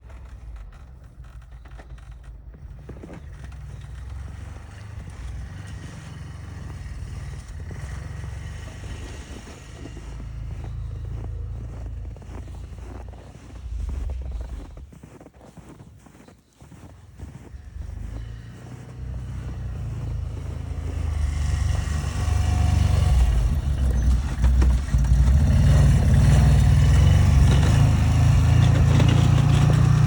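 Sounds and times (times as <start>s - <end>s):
wind buffeting microphone: 6.6s - 28.6s.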